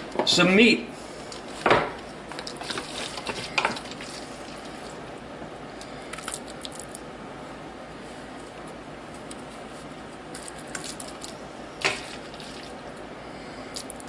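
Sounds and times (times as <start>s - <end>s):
soft squishes of food: 1.2s - 5.2s, 5.8s - 7.0s, 8.0s - 14.0s.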